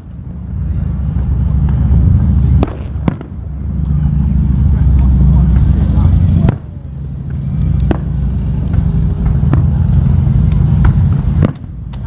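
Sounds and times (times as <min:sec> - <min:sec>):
fireworks rumbling: 0:00.0 - 0:12.0
fireworks sharp cracks: 0:02.6 - 0:03.5, 0:10.5 - 0:12.0.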